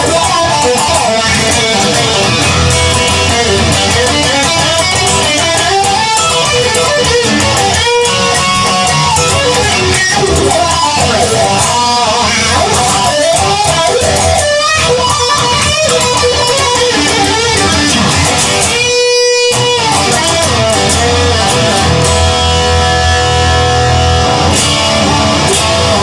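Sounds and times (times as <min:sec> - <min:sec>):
bass line: 0:00.0 - 0:12.8, 0:19.6 - 0:26.0
electric guitar lead: 0:00.0 - 0:26.0.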